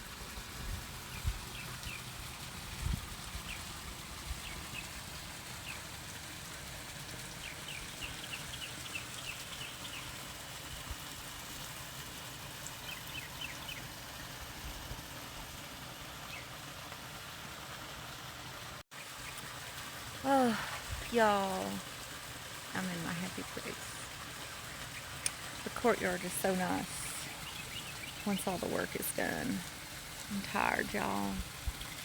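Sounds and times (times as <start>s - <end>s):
fountain trickling and splashing: 0.0s - 32.0s
birds chirping: 22.8s - 29.6s.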